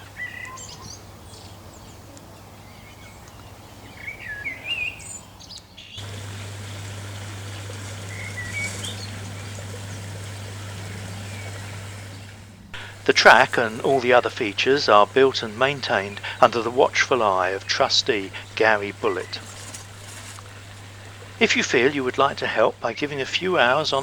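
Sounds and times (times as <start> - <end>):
small birds chirping: 0.2 - 24.0
steady low hum: 6.0 - 24.0.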